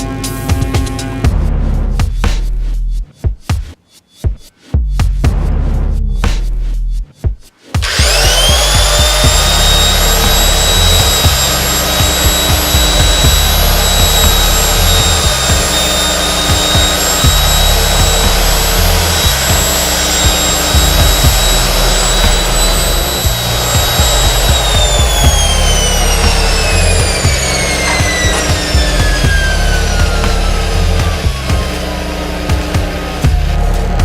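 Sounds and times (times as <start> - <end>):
electric power tool motor whining: 7.8 - 33.9.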